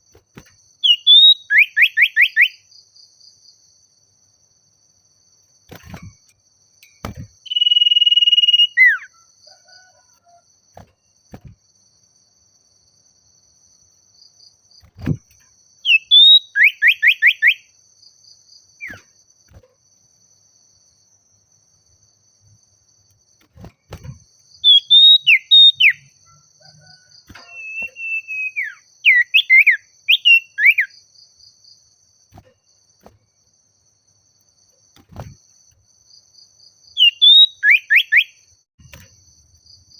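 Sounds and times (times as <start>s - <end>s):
bird whistling song: 0.8s - 2.6s, 7.4s - 9.2s, 15.8s - 17.7s, 18.8s - 19.1s, 24.6s - 26.1s, 27.3s - 31.0s, 37.0s - 38.4s.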